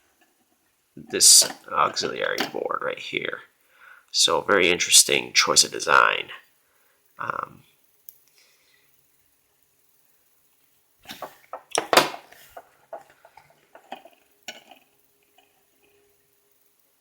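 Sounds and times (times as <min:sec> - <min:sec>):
hard parts knocking on tabletop: 0:11.1 - 0:14.0.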